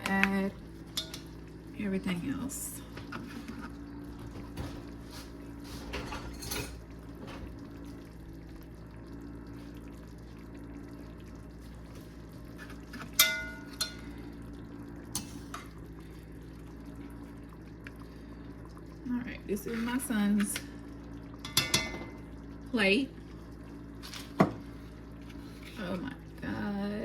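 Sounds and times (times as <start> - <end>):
utensil clinking against pot: 0.9 - 1.3, 13.0 - 14.1.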